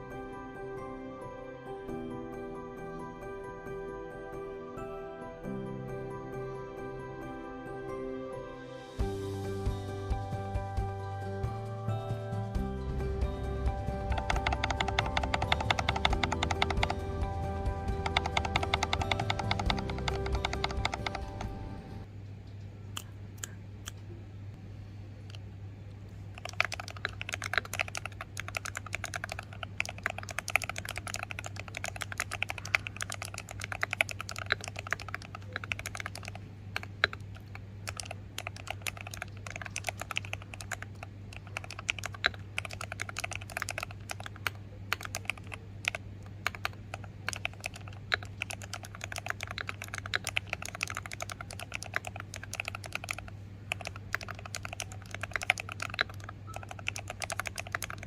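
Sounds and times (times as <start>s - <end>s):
mechanical keyboard typing: 13.2s - 22.0s, 26.3s - 58.0s.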